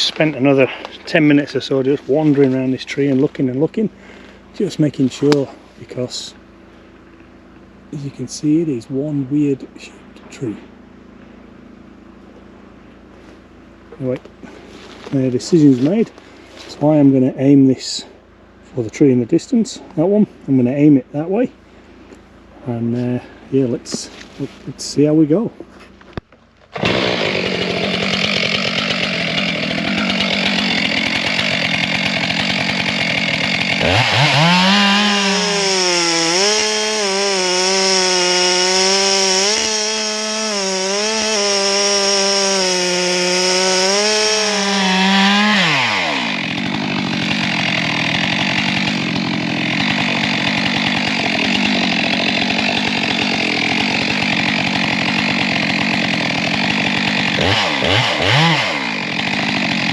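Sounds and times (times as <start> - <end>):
two-stroke chainsaw revving: 26.7 - 59.9.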